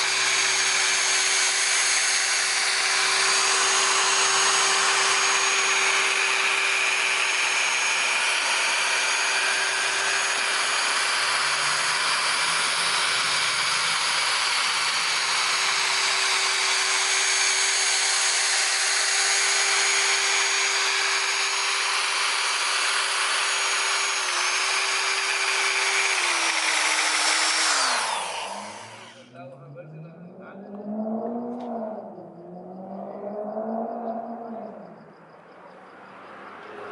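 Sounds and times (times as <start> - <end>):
polisher motor whine: 0.0 - 29.4.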